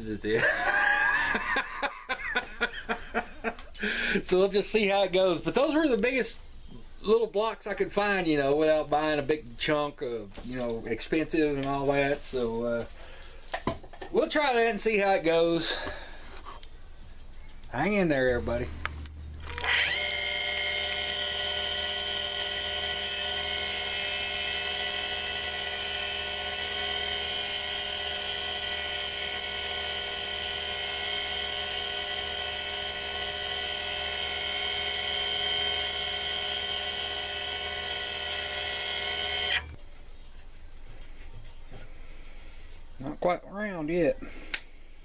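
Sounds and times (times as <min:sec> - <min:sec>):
lathe whining: 0:18.1 - 0:39.8.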